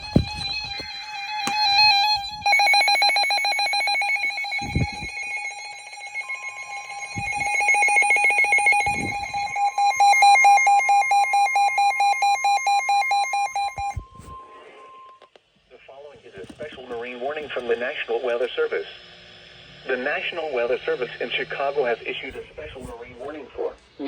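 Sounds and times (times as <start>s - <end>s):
steady alarm tone: 0.0s - 15.3s
pulsing electronic alarm beep: 1.5s - 15.2s.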